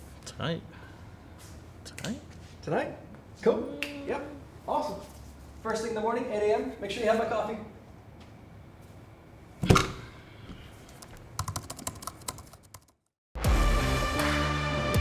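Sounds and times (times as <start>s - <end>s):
single thunk: 9.6s - 10.6s
computer keyboard typing clicks: 10.9s - 13.0s.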